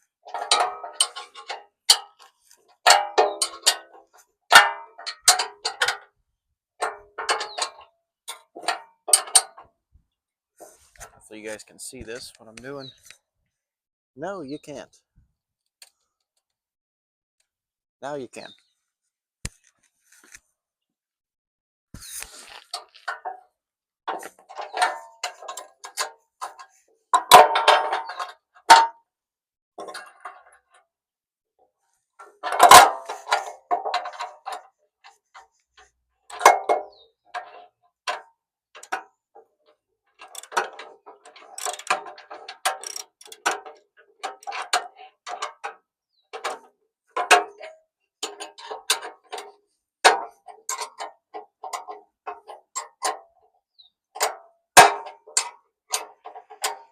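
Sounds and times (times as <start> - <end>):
metallic knocks: 0.3 - 2.2, 2.8 - 6.1.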